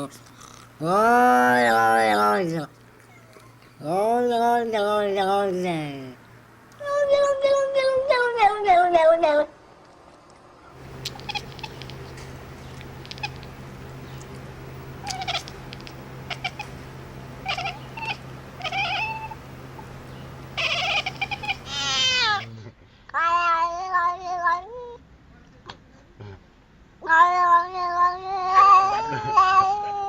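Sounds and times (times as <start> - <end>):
steady low hum: 0.0 - 7.7, 9.3 - 23.0
cat meowing and yowling: 11.1 - 11.9, 17.5 - 19.4, 20.6 - 22.5, 27.0 - 30.0.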